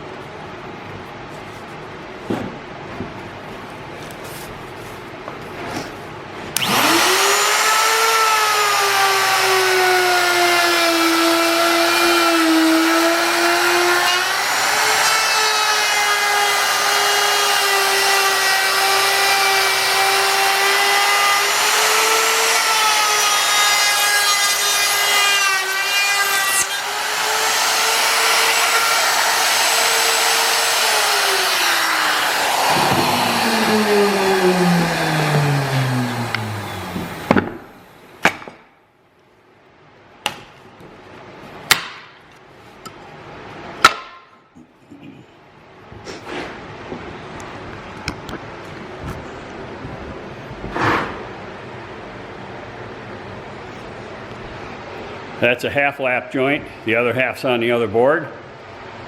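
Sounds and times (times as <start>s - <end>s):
power tool cutting wood: 6.6s - 37.8s.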